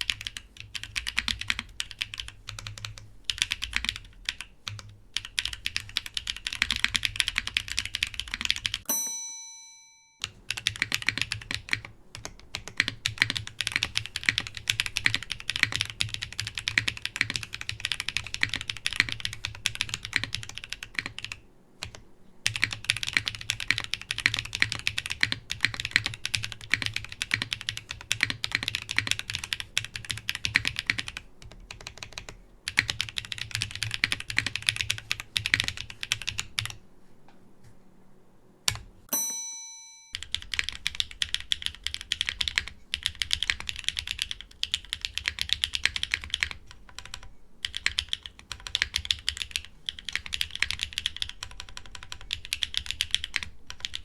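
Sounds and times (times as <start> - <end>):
mechanical keyboard typing: 0.0 - 8.9, 10.2 - 36.8, 40.2 - 54.0
bell-like chime: 8.9 - 10.3, 39.1 - 40.2.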